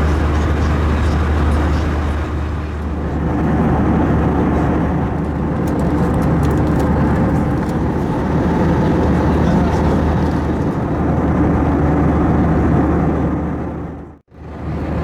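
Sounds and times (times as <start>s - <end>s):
aircraft engine hum: 0.0s - 15.0s.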